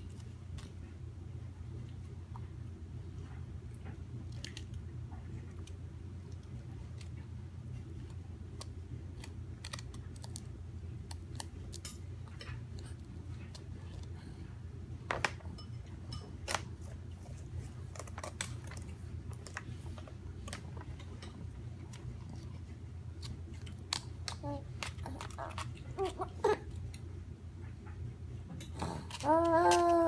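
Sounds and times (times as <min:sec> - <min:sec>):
crackers being chewed: 0:03.6 - 0:14.4, 0:16.4 - 0:27.1, 0:28.6 - 0:30.0.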